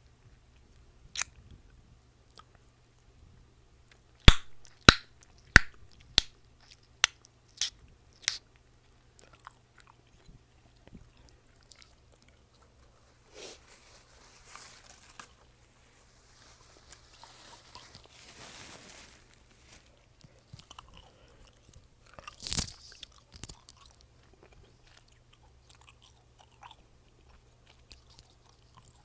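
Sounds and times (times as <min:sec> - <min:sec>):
chewing gum popping: 0:01.1 - 0:01.4, 0:04.3 - 0:10.3, 0:21.7 - 0:29.0
wet chewing: 0:19.9 - 0:29.0.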